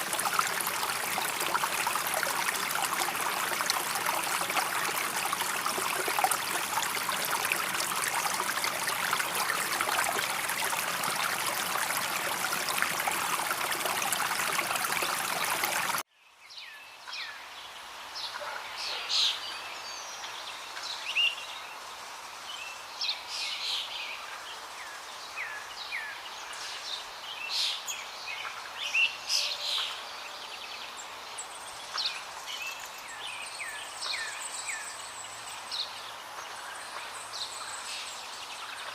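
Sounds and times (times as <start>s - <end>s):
water spraying: 0.0s - 16.0s.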